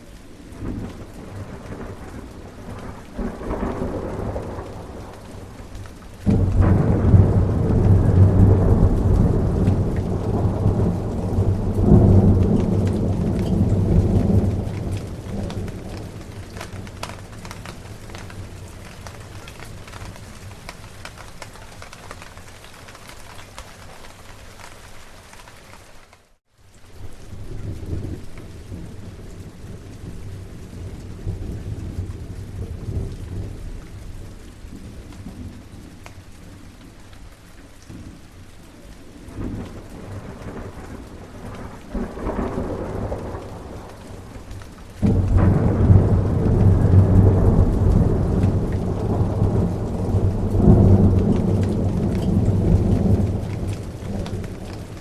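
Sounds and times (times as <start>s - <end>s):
steady rain: 0.0s - 55.0s
thunder rumbling: 0.3s - 23.0s, 38.8s - 55.0s
loud thunderclap: 0.6s - 5.6s, 6.2s - 18.5s, 39.3s - 44.4s, 45.0s - 55.0s.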